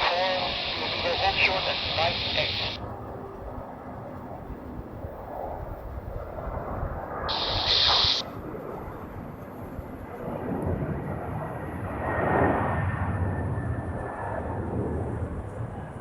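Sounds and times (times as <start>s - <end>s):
loud high hiss: 0.0s - 2.8s, 7.3s - 8.2s
jet engine rumble: 0.0s - 16.0s.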